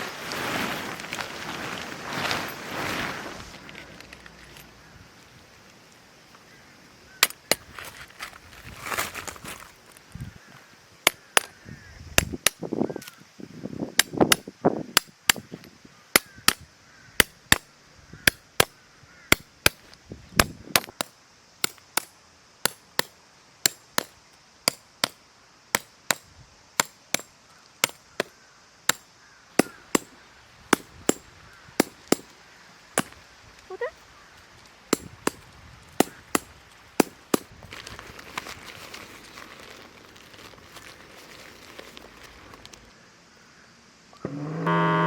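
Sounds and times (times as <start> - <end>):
hammering: 31.8 - 32.3, 33.0 - 33.2, 34.9 - 35.4.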